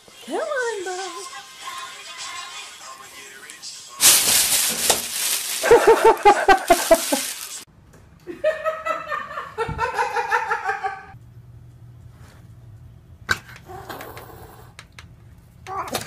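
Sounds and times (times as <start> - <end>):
loud hissy background: 3.8 - 7.7
people laughing: 5.6 - 7.4, 8.3 - 11.2.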